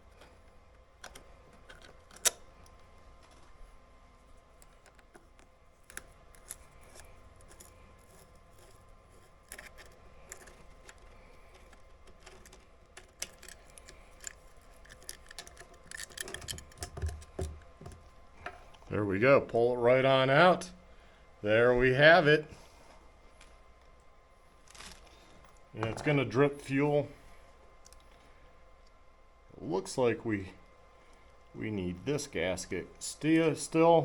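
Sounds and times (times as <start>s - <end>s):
tools and metal parts clicking: 0.0s - 3.4s, 4.5s - 18.1s.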